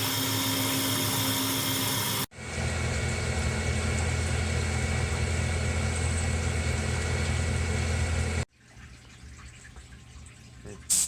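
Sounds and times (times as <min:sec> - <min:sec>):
milling machine humming and whining: 0:00.0 - 0:08.4.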